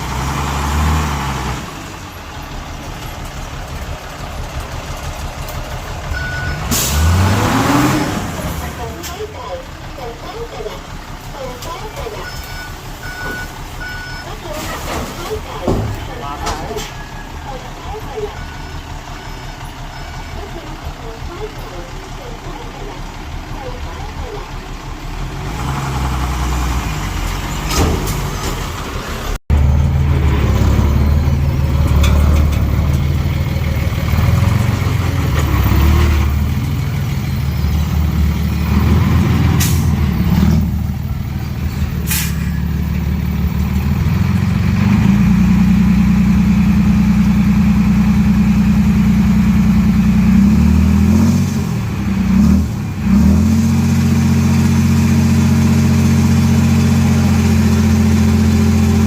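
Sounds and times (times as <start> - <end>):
diesel machinery engine under load: 0.0 - 59.0
short sharp hisses: 42.1 - 42.5.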